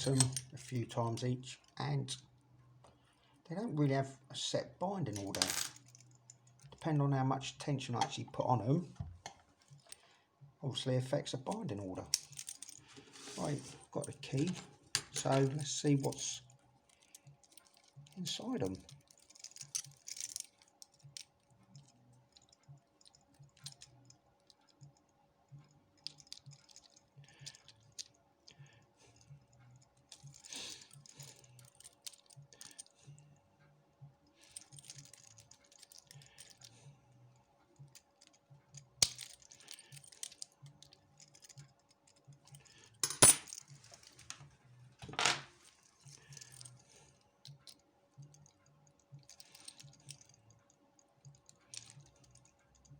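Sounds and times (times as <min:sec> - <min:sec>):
small metal clicks and scrapes: 0:34.4 - 0:36.9, 0:37.8 - 0:44.4, 0:45.6 - 0:52.9.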